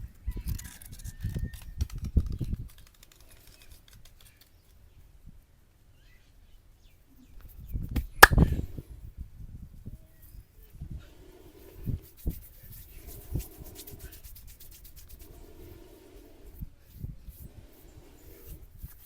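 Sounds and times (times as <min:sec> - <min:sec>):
sharp snap: 0:08.0 - 0:08.5.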